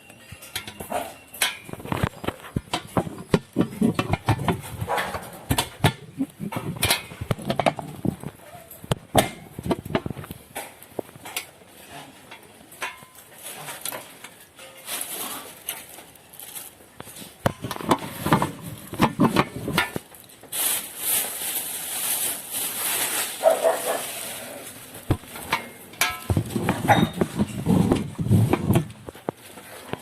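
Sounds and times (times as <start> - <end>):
rustling and handling knocks: 0.4 - 11.6, 17.0 - 20.1, 25.0 - 30.0
dog whining: 8.2 - 8.9.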